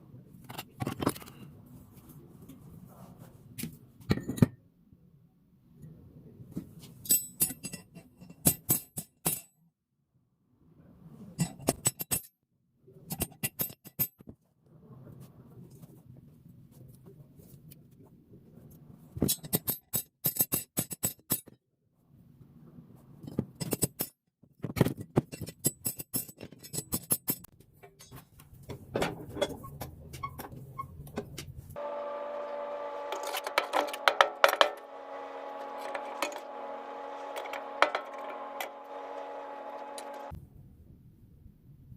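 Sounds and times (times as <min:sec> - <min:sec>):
low steady hum: 0:31.8 - 0:41.5.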